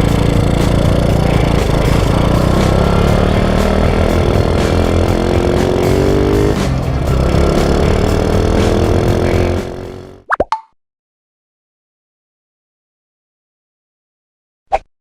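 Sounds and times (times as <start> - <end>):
motorcycle engine revving: 0.0 - 10.2.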